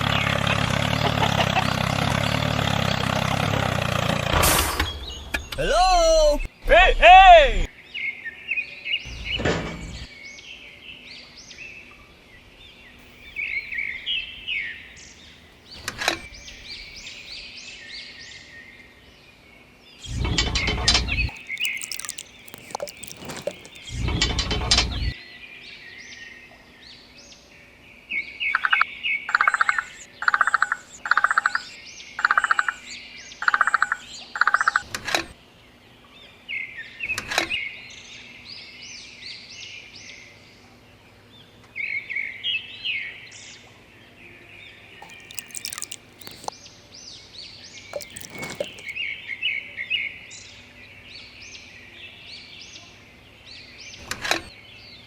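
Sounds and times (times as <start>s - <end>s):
small birds chirping: 12.6s - 17.9s, 21.1s - 24.1s, 45.0s - 46.5s, 47.9s - 49.0s
sharp clicks: 21.3s - 23.9s, 45.0s - 46.5s, 48.0s - 48.9s.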